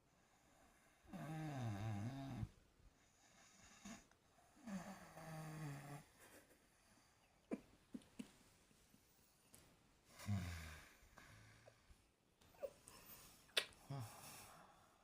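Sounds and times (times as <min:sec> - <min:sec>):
person snoring: 0:10.2 - 0:11.7.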